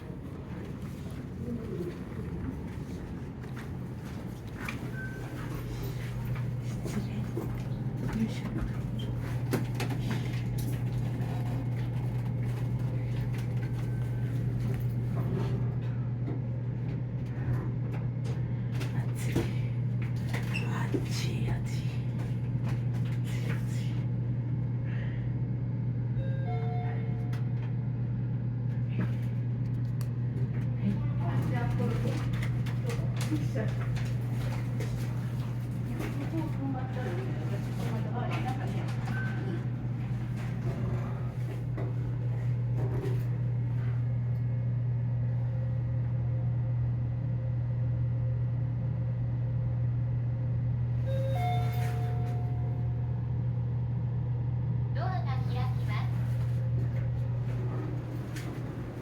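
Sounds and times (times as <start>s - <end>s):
steady low hum: 0.0s - 59.0s
elevator arrival chime: 4.8s - 6.4s, 26.2s - 27.8s, 50.9s - 53.2s.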